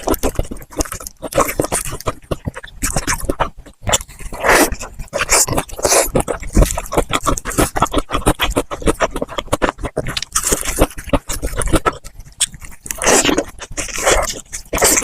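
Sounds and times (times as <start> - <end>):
crunching fried chicken: 0.0 - 15.0.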